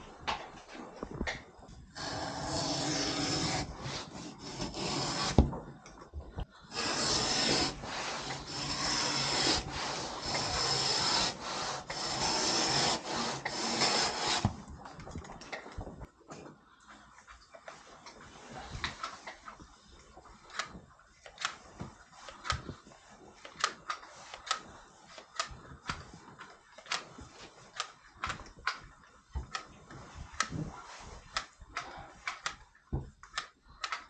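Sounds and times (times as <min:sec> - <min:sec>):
hand tool rasping on wall board: 0:02.0 - 0:05.5, 0:06.7 - 0:14.6.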